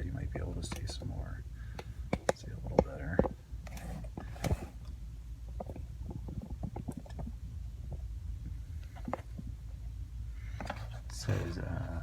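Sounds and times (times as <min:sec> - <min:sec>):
cardboard box handling rumble: 0:02.1 - 0:07.4, 0:10.4 - 0:12.0.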